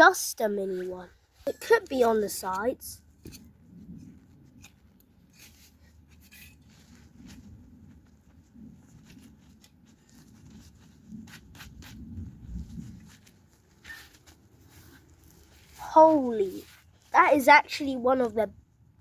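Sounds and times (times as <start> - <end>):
hands digging in soil: 4.4 - 18.0.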